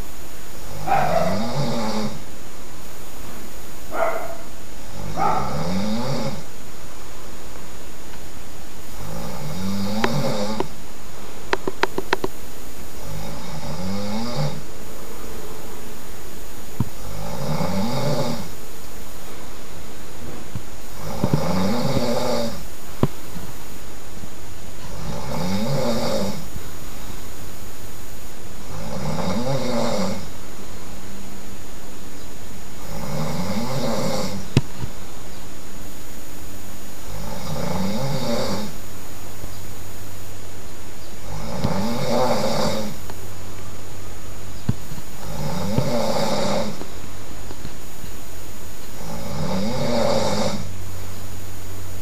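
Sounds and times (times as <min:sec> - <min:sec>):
person snoring loudly: 0:00.6 - 0:02.3, 0:03.9 - 0:06.5, 0:08.9 - 0:10.7, 0:13.0 - 0:16.0, 0:16.9 - 0:18.6, 0:20.8 - 0:22.7, 0:24.8 - 0:26.6, 0:28.6 - 0:30.4, 0:32.8 - 0:34.6, 0:37.1 - 0:38.8, 0:41.2 - 0:43.0, 0:45.2 - 0:46.9, 0:49.0 - 0:50.8.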